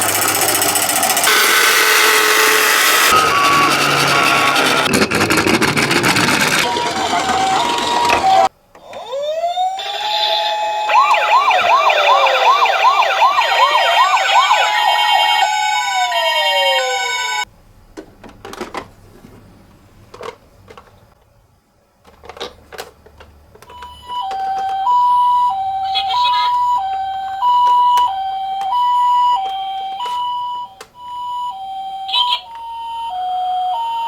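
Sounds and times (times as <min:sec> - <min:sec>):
two-note ambulance siren: 0:01.2 - 0:04.9, 0:06.6 - 0:17.5, 0:23.9 - 0:34.0
toy siren wailing and warbling: 0:01.3 - 0:04.9, 0:06.6 - 0:17.5, 0:24.2 - 0:34.0.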